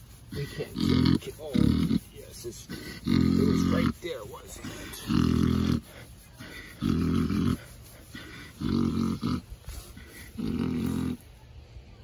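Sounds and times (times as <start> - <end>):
pig snoring: 0.3 - 4.0, 5.1 - 5.9, 6.7 - 11.2.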